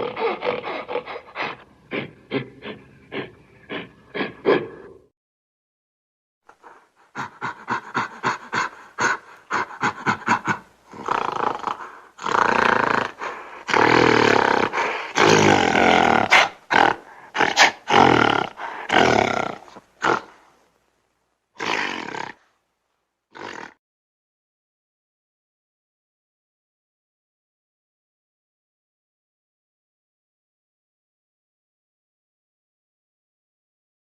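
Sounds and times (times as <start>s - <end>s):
gorilla grunts: 0.0s - 5.1s, 6.6s - 20.4s, 23.3s - 23.8s
gorilla roars: 0.0s - 5.1s, 7.2s - 20.4s, 21.6s - 22.4s, 23.3s - 23.8s.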